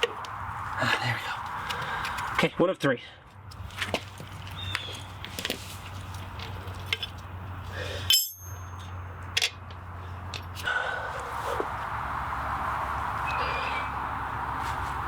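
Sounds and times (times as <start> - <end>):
metal tools clinking: 8.0 - 9.6
rushing noise: 10.7 - 15.0.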